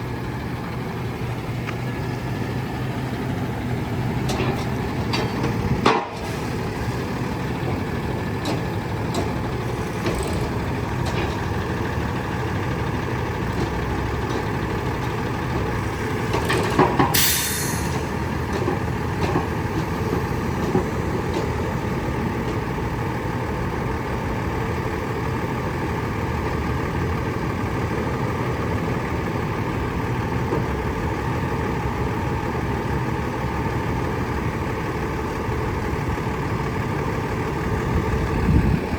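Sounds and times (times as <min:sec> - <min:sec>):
diesel truck engine running: 0:00.0 - 0:38.9
air brake hiss: 0:17.1 - 0:18.0.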